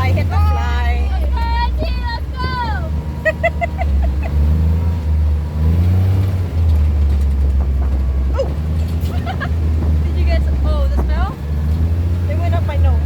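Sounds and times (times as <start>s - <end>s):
quad bike engine accelerating: 0.0s - 13.0s.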